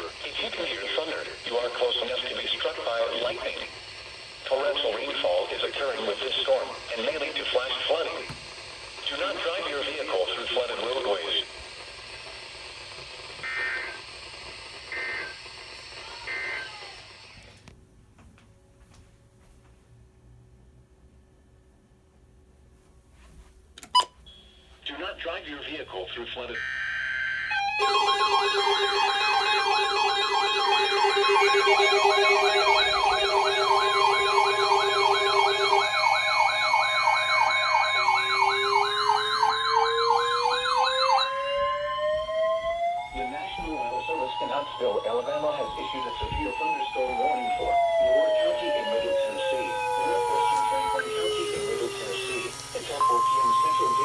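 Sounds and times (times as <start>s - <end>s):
buzzy digital data bursts: 0.0s - 17.4s, 26.6s - 41.4s, 43.4s - 54.0s
radio hiss: 0.0s - 17.7s, 24.8s - 54.0s
electronic siren yelping: 13.3s - 14.2s, 14.8s - 17.5s, 26.6s - 54.0s
lower siren tone rising: 26.9s - 54.0s.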